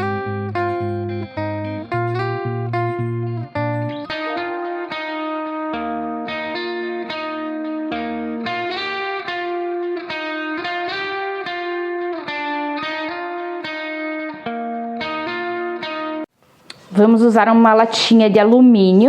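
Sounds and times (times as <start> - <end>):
plucked guitar chords: 0.0 - 16.3.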